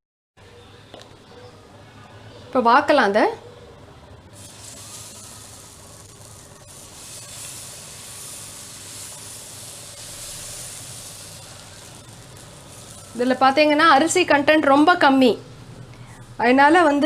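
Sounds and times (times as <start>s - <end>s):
batter sizzling on a hot pan: 4.3s - 14.4s.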